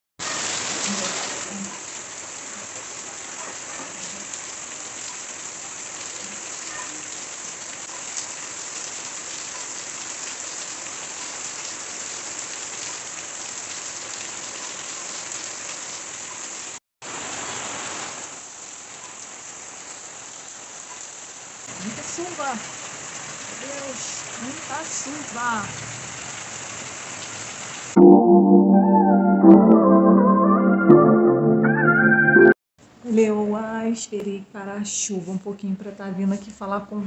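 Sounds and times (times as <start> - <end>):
heavy rain falling: 0.2 - 28.0.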